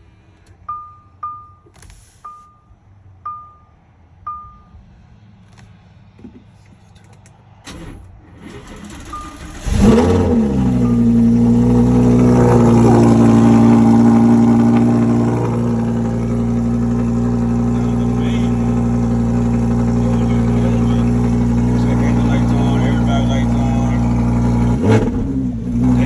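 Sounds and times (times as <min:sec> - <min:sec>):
car engine revving and idling: 0:08.3 - 0:26.0
starter motor cranking: 0:08.4 - 0:10.3.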